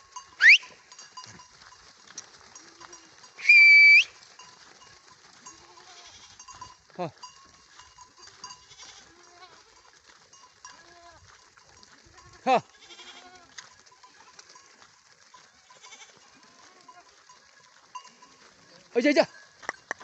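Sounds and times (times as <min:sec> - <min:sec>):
loud high whistles: 0:00.4 - 0:00.7, 0:03.4 - 0:04.1
goats bleating: 0:02.5 - 0:04.0, 0:04.7 - 0:10.0, 0:10.6 - 0:19.6.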